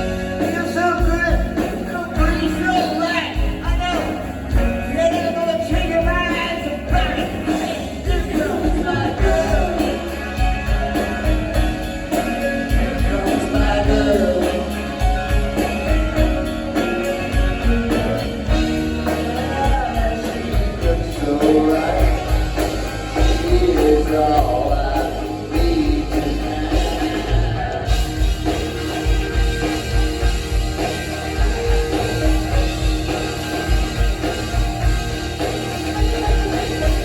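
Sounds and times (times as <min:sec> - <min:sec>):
person singing: 0:00.0 - 0:16.3, 0:17.9 - 0:28.8
drums beating: 0:00.0 - 0:37.0
live rock band playing: 0:00.0 - 0:37.0.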